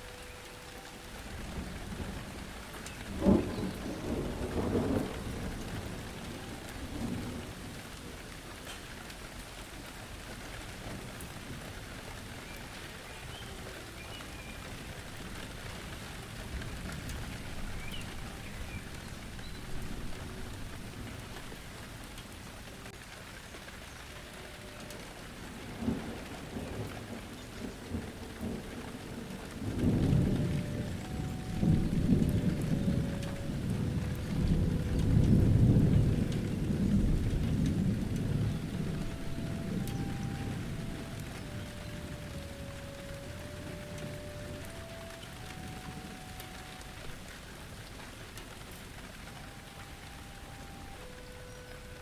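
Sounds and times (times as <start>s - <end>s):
rain falling on ground: 0.0s - 52.0s
rolling thunder: 1.3s - 8.3s, 25.3s - 52.0s.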